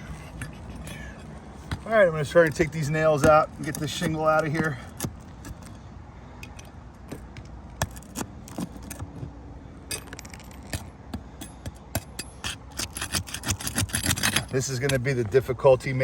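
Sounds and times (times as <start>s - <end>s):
metal tool clicking and scraping: 9.9s - 15.1s.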